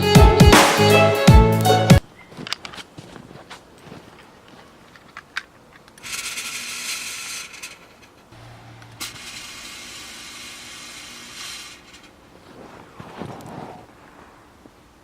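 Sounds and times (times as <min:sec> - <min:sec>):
snowblower spraying snow: 0:08.4 - 0:12.1.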